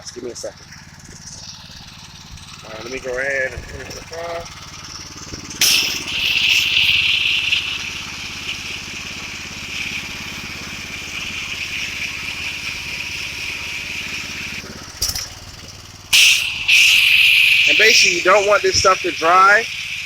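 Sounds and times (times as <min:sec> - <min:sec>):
gas engine running: 0:00.0 - 0:20.0
nozzle spraying with loud hiss: 0:05.3 - 0:20.0.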